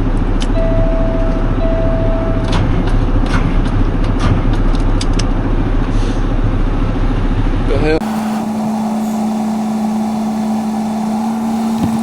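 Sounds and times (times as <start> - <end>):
diesel truck engine idling: 0.0 - 12.0
steady tone: 0.5 - 2.6, 8.0 - 12.0.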